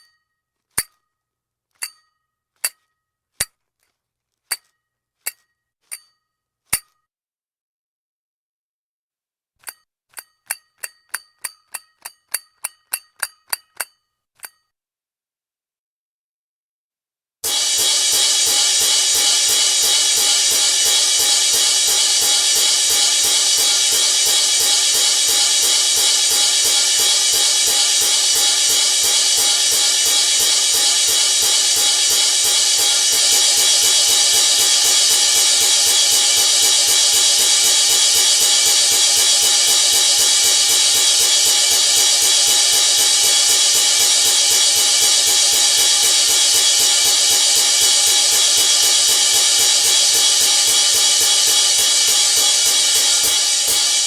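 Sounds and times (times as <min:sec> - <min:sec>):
toy monkey cymbals clashing: 0:17.4 - 0:54.0.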